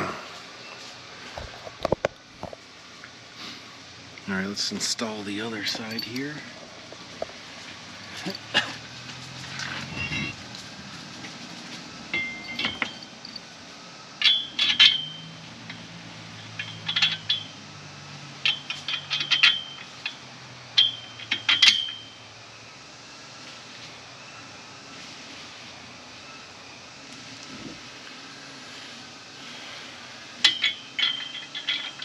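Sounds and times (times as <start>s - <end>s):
metal parts clinking: 5.6s - 7.3s, 12.1s - 13.4s, 14.2s - 22.2s, 30.4s - 32.0s.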